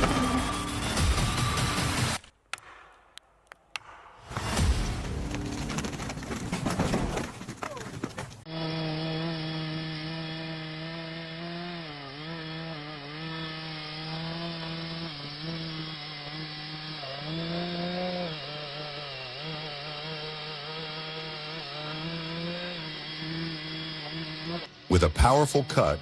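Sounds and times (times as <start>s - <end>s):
chainsaw cutting tree trunk: 8.5s - 25.0s.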